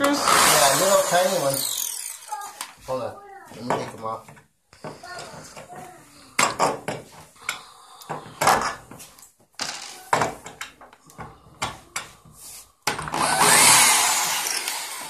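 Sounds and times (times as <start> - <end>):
power drill running: 0.0 - 2.6, 13.0 - 15.0.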